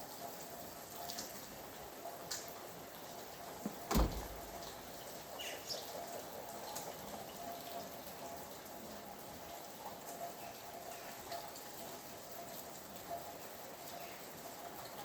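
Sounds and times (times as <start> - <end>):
rain dripping and pattering: 0.0 - 15.0
loud drop thud: 3.9 - 4.7.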